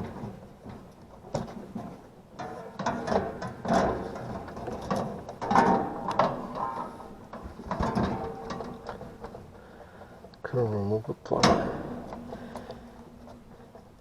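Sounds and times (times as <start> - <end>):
hand tools clicking and scraping metal: 0.0 - 10.4.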